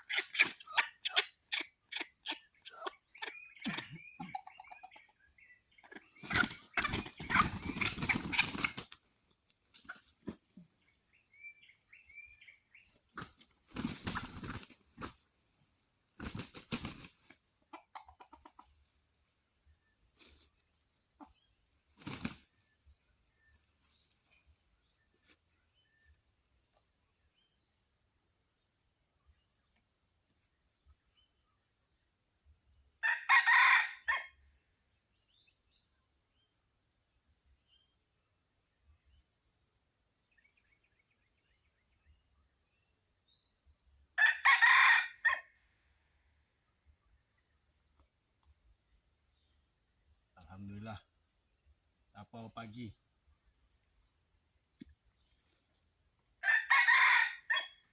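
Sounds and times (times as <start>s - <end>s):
wing flapping and scuffling: 6.2s - 10.8s, 13.1s - 15.3s, 16.2s - 17.4s, 21.9s - 22.6s
rooster crowing: 33.0s - 34.4s, 44.2s - 45.5s, 56.4s - 57.8s.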